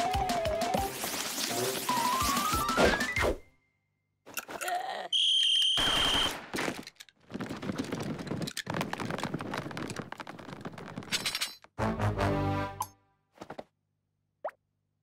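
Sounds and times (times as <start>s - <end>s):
high whistle-like tone: 5.2s - 6.3s.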